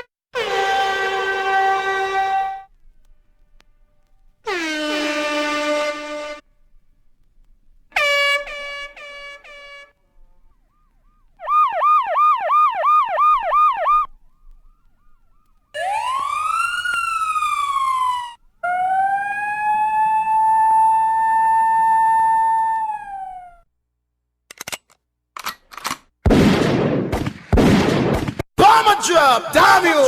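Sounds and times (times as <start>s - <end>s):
horn-like siren blast: 0.0s - 2.8s, 4.5s - 6.4s, 8.0s - 23.6s
slow wailing siren: 0.4s - 2.8s, 8.0s - 23.7s
fast yelping siren: 10.4s - 23.6s
rising siren tone: 10.4s - 23.6s.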